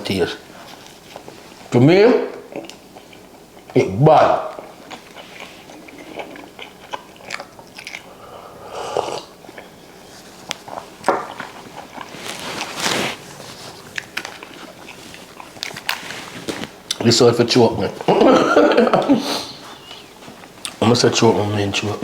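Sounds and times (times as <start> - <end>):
person chewing and eating: 2.4 - 17.1, 18.0 - 20.8.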